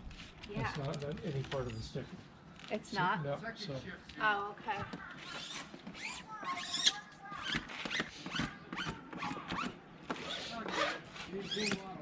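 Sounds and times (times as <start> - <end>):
transfer paper peeling off decal: 5.2 - 11.9.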